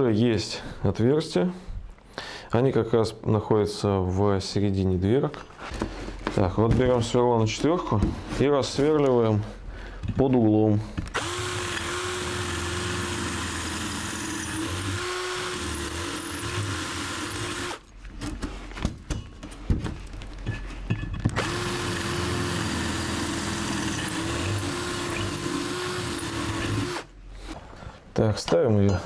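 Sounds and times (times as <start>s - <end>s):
electric drill running under load: 11.1s - 17.8s, 21.4s - 27.1s
drill clicks: 11.1s - 17.9s, 21.3s - 27.1s.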